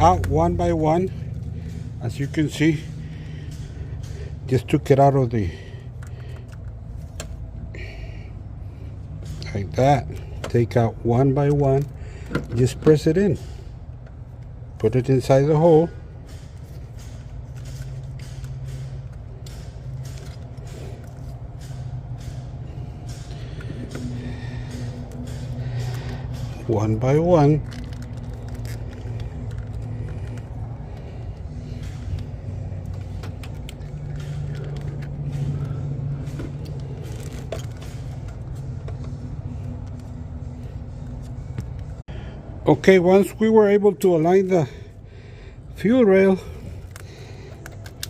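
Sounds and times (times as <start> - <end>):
low engine-like rumble: 0.0 - 48.0
steady low hum: 0.0 - 48.0.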